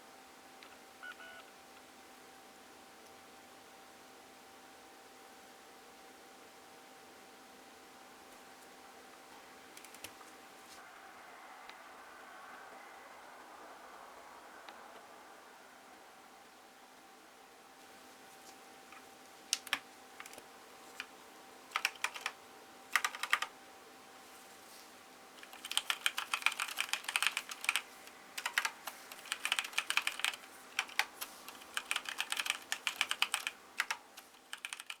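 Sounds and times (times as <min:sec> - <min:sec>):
typing on mechanical keyboard: 0:09.8 - 0:10.2, 0:19.6 - 0:21.1, 0:21.7 - 0:23.5, 0:25.4 - 0:35.0.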